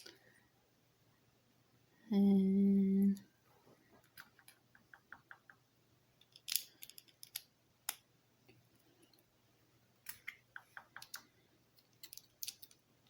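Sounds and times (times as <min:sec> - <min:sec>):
plastic pieces clicking: 0:06.2 - 0:08.0, 0:11.0 - 0:12.8.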